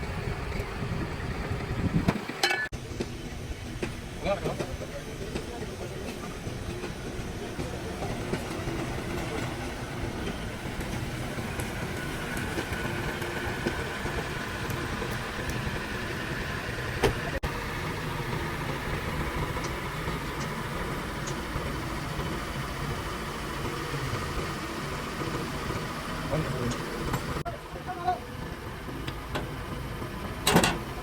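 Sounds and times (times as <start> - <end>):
engine running: 0.0 - 31.0.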